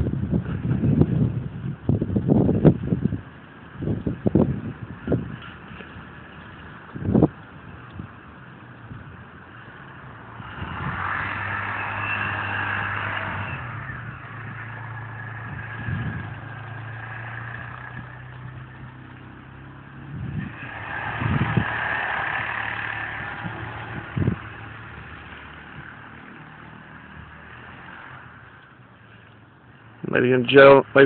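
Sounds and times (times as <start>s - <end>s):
vehicle engine humming: 0.0s - 31.0s.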